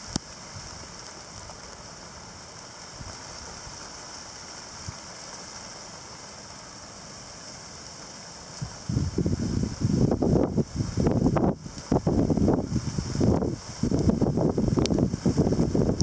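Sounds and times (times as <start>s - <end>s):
rain showers hissing: 0.0s - 16.0s
gusty wind: 8.5s - 16.0s.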